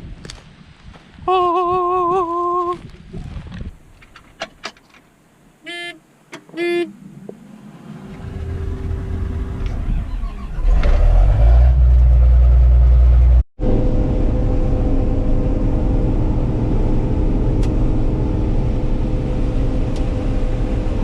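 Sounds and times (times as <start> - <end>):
diesel engine starting and running: 7.0 - 21.0.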